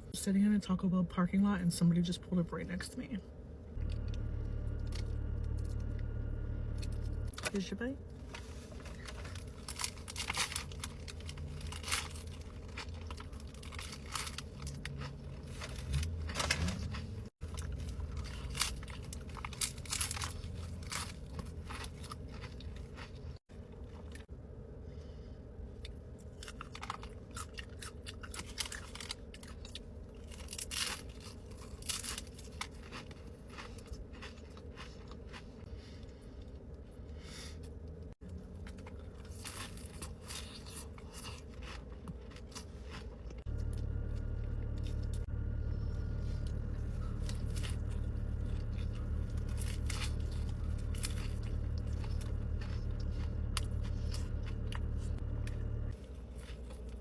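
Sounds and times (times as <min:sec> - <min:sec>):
low steady hum: 0:00.0 - 0:57.0
wrapper crinkling: 0:08.2 - 0:23.1
person chewing crunchy food: 0:08.3 - 0:24.3, 0:25.8 - 0:36.7, 0:37.4 - 0:57.0.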